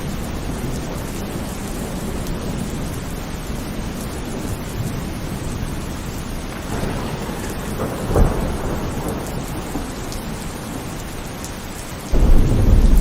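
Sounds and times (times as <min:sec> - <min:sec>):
heavy rain: 0:00.0 - 0:13.0
thunder rumbling: 0:00.0 - 0:13.0.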